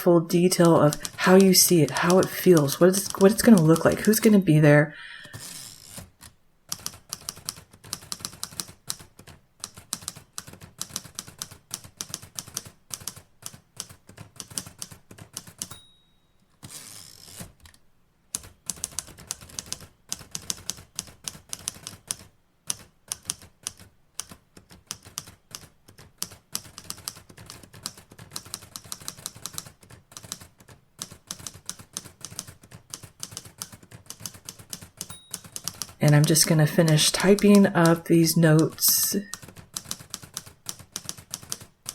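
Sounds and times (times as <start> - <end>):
typewriter keys clacking: 0.4 - 4.4, 5.2 - 15.8, 18.4 - 41.9
typewriter bell ring: 15.6 - 17.3, 35.0 - 37.7.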